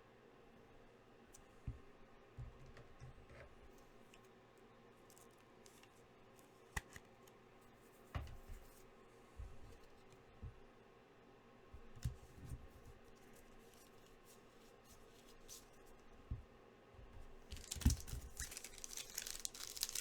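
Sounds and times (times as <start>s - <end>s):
trading cards handled: 17.5s - 20.0s.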